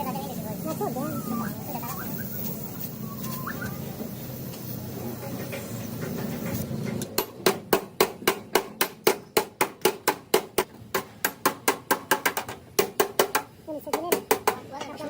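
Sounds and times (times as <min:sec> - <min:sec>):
hammer striking: 0:07.0 - 0:14.6.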